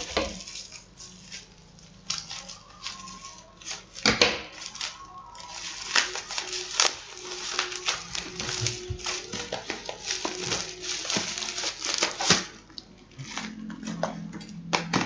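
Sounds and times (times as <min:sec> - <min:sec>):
packaging crinkling and rustling: 0:00.0 - 0:15.0.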